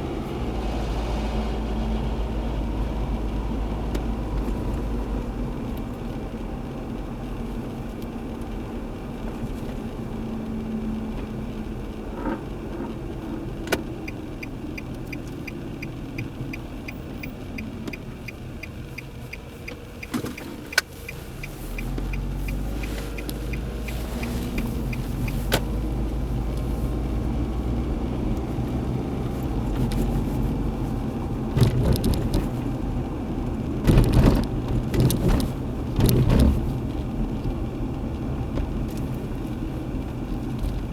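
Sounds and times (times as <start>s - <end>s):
car engine and road rumble: 0.0s - 40.9s
turn-signal relay ticking: 14.0s - 26.0s.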